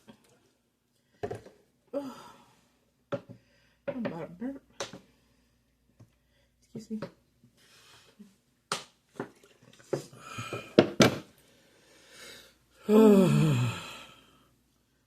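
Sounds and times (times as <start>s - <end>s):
long low burp: 12.9s - 14.0s.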